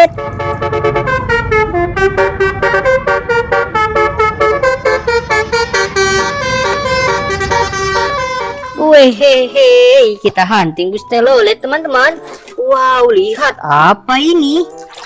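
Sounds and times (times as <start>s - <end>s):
multi-tone bus horn melody: 0.0s - 9.6s.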